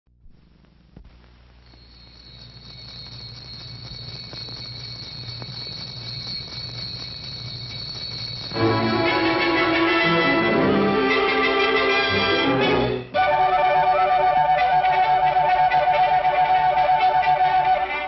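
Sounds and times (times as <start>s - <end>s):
film soundtrack hiss: 0.1s - 18.0s
faint high whine: 0.2s - 18.0s.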